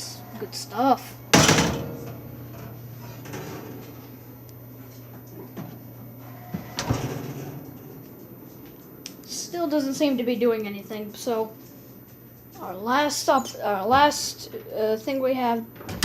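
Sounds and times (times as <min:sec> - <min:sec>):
steady low hum: 0:00.0 - 0:16.0
loud clunk: 0:01.3 - 0:03.5.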